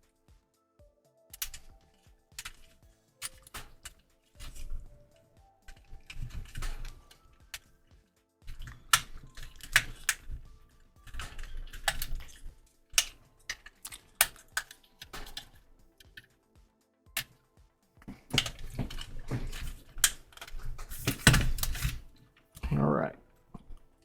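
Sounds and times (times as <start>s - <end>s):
plastic clicks and snaps: 1.3s - 4.8s, 8.5s - 16.3s, 18.0s - 22.6s.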